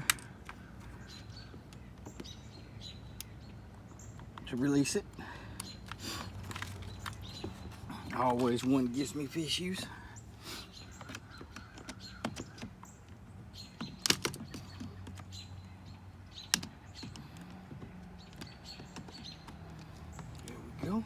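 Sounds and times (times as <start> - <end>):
plastic connector clicks and knocks: 13.8 - 15.2.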